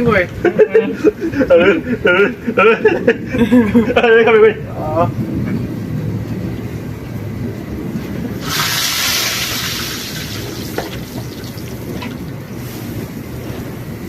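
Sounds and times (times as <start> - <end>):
food sizzling in a frying pan: 8.4 - 12.0.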